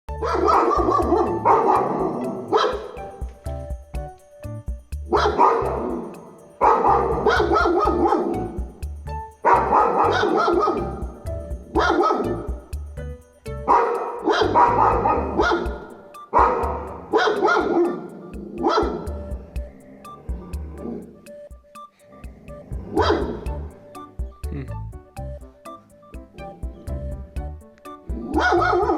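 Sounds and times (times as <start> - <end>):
background music with low beat: 0.1 - 28.9
dogs barking loudly: 0.2 - 2.0.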